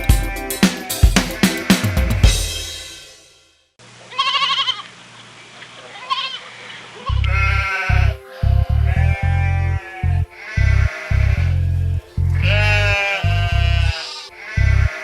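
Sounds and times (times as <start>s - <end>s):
music with pulsing bass: 0.0s - 3.2s, 7.1s - 14.0s, 14.6s - 15.0s
song music: 0.0s - 3.7s, 7.1s - 15.0s
sheep bleating: 4.1s - 4.9s, 5.9s - 11.7s, 12.3s - 15.0s.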